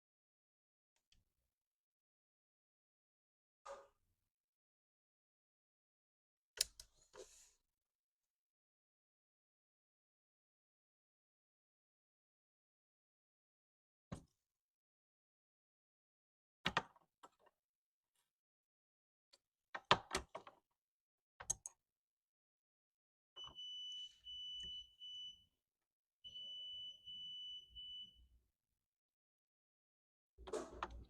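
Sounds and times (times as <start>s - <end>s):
piezo beeper long beeps: 23.4s - 25.4s, 26.3s - 28.2s.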